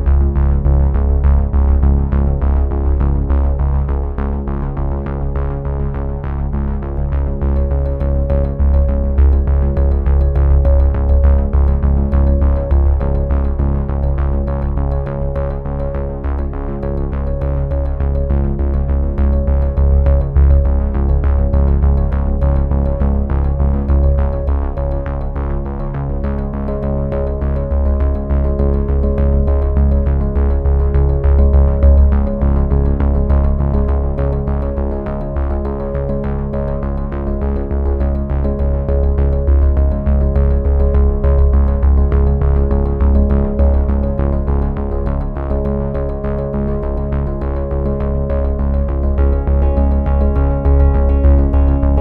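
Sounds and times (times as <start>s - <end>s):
steady bass: 0.0s - 52.0s
synthesizer and keyboard tune: 0.0s - 52.0s
light beat: 48.8s - 52.0s.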